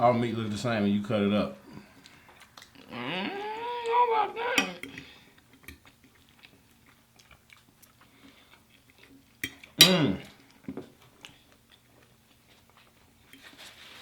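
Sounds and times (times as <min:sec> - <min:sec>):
quiet chewing and mouth smacks: 0:01.7 - 0:02.9, 0:04.8 - 0:13.5.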